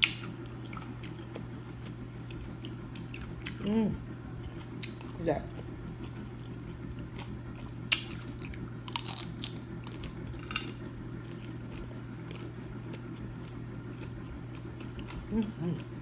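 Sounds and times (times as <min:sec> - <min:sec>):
chewing crunchy food: 0:00.0 - 0:16.0
steady low hum: 0:00.0 - 0:16.0
sharp crackling crunches: 0:07.9 - 0:12.5.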